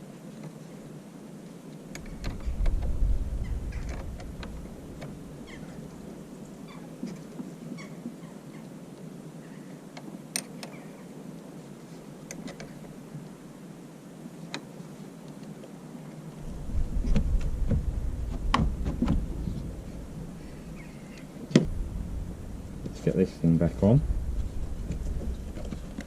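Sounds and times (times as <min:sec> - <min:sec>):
low rumble on microphone: 0:02.0 - 0:06.8, 0:16.4 - 0:26.0.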